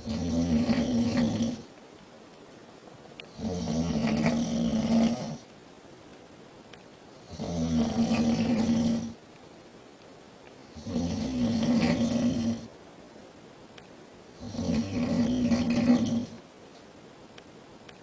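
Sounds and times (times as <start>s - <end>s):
woman snoring: 0.0s - 1.7s, 3.3s - 5.4s, 7.2s - 9.2s, 10.7s - 12.7s, 14.4s - 16.4s.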